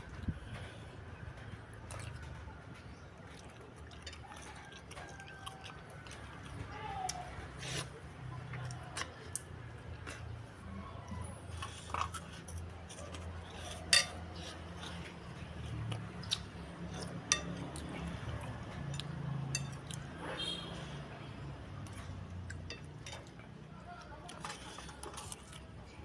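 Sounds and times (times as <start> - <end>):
cutlery clinking against a bowl: 11.6 - 15.1, 16.3 - 17.9, 18.8 - 20.0, 21.9 - 23.4.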